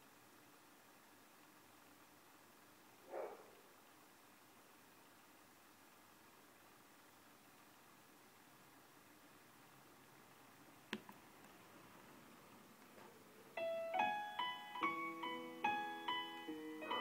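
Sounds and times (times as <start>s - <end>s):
faint hiss: 0.0s - 17.0s
piano notes through speakers: 13.4s - 17.0s.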